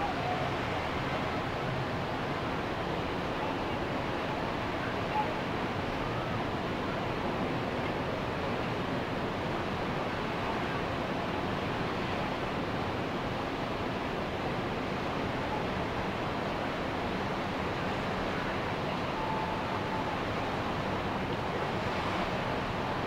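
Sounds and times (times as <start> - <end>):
ocean surf washing on beach: 0.0 - 23.0.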